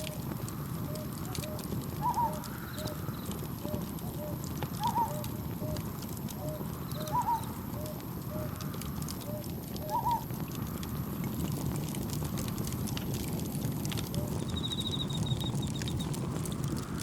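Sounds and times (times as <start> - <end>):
campfire crackling: 0.0 - 17.0
cricket chirping: 14.5 - 15.6.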